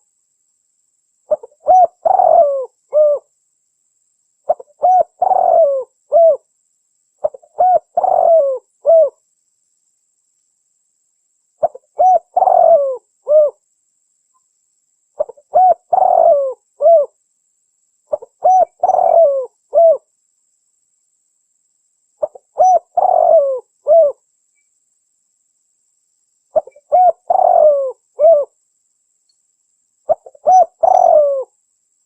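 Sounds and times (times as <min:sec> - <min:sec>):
dove cooing: 0:01.3 - 0:03.3, 0:04.5 - 0:06.5, 0:07.2 - 0:09.2, 0:11.6 - 0:13.6, 0:15.2 - 0:17.2, 0:18.1 - 0:20.1, 0:22.2 - 0:24.2, 0:26.6 - 0:28.6, 0:30.1 - 0:31.6.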